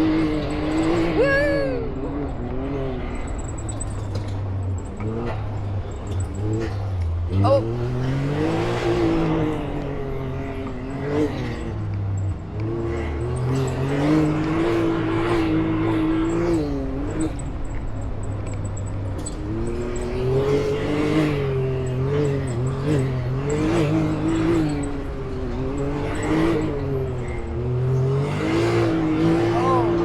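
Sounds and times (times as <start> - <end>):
off-road vehicle engine: 0.0 - 30.0.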